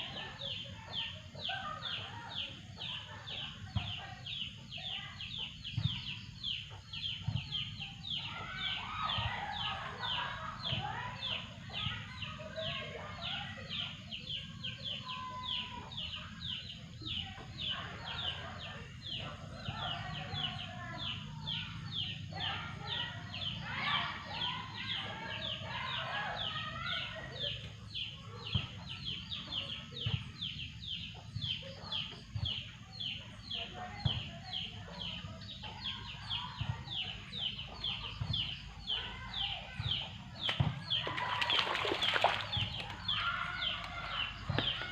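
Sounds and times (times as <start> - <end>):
chickens clucking: 34.0 - 44.9.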